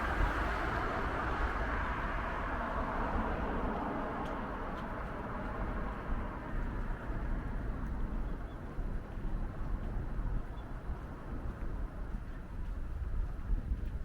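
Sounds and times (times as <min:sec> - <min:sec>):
vehicle passing: 0:00.0 - 0:03.7
steady low traffic rumble: 0:00.0 - 0:14.0.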